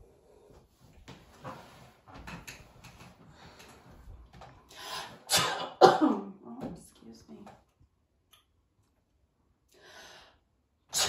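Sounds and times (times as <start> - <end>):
faint clicks and rustling: 0.9 - 4.7
person sneezing loudly: 5.3 - 6.2.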